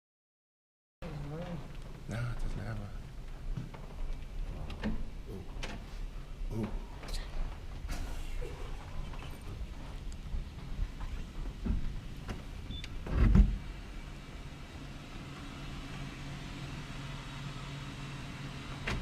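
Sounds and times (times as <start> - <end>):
steady low hum: 1.0 - 19.0.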